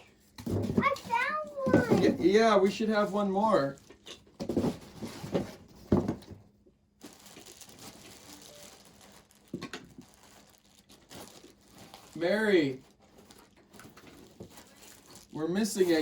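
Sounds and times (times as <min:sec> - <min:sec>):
rustling packaging: 0:00.4 - 0:02.5, 0:03.1 - 0:06.4, 0:07.0 - 0:16.0.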